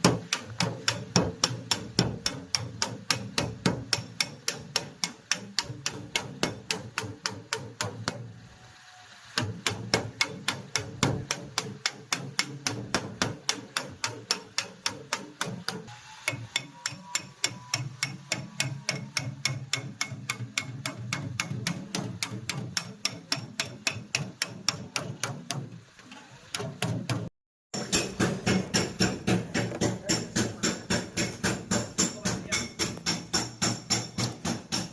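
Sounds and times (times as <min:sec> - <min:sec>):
hammer blows: 0:27.8 - 0:34.9.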